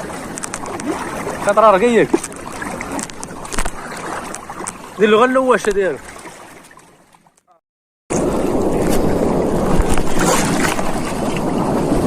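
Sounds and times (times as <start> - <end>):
sea water rushing: 0.0 - 7.4, 8.1 - 12.0
faint splashes: 0.0 - 11.6
wind on microphone: 8.1 - 12.0.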